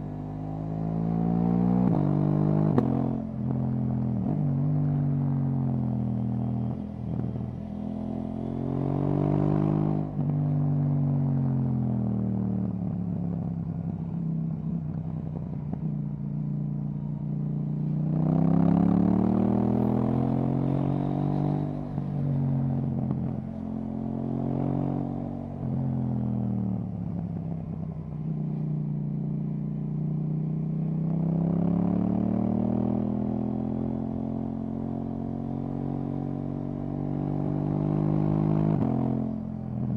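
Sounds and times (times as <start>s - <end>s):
motorcycle engine accelerating: 11.8s - 39.9s.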